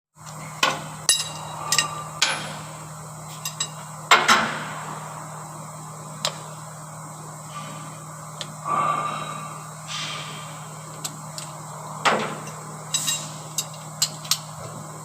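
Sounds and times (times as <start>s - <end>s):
low hum: 0.2s - 15.0s
metal tools clanking on metal: 1.1s - 2.6s, 3.3s - 3.8s, 12.2s - 14.5s.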